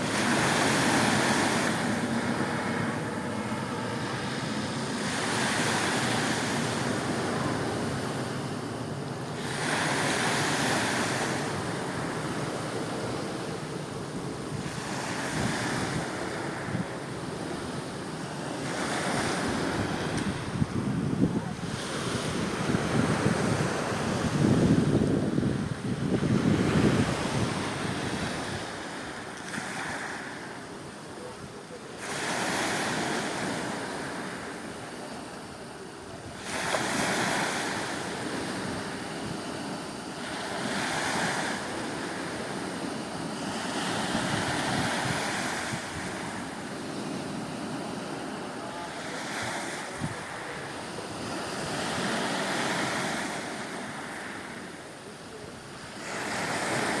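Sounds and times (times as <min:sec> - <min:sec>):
wind on microphone: 0:00.0 - 0:30.2, 0:35.8 - 0:47.9
waves breaking: 0:00.0 - 0:57.0.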